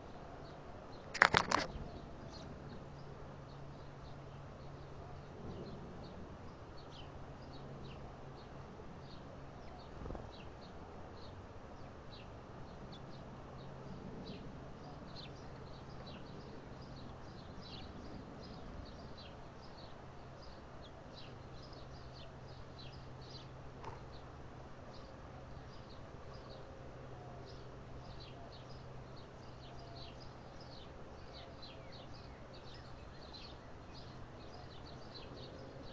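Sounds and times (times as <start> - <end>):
small birds chirping: 0.0 - 35.9.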